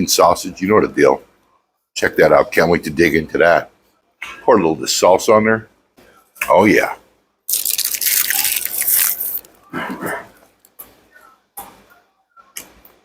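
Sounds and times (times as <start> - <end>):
salsa pouring wet spattering hiss: 7.5 - 9.5.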